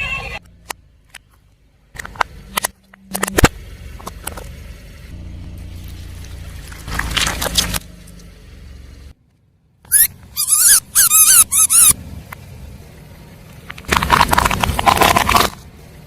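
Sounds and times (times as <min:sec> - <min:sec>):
car engine running low: 0:00.4 - 0:16.0
tyre crushing brittle objects: 0:06.6 - 0:07.8, 0:13.8 - 0:15.7.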